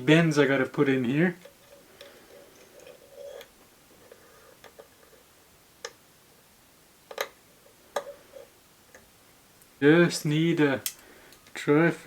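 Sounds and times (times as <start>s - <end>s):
metal wire clicking: 10.8s - 11.5s.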